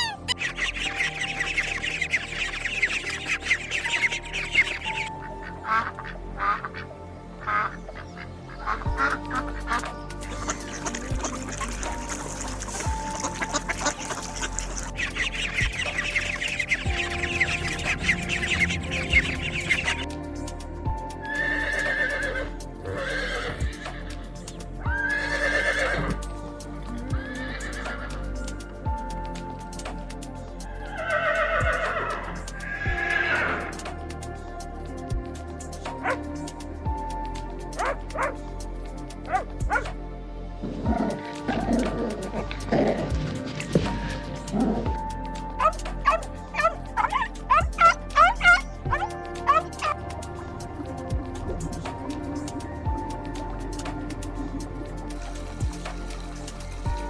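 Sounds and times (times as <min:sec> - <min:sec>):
high-pitched bird calls: 0:00.0 - 0:05.1, 0:10.3 - 0:20.1
background music: 0:00.0 - 0:57.0
ducks quacking: 0:10.3 - 0:20.0
horses neighing: 0:21.3 - 0:24.2, 0:25.0 - 0:26.3, 0:27.2 - 0:28.2, 0:31.0 - 0:32.3.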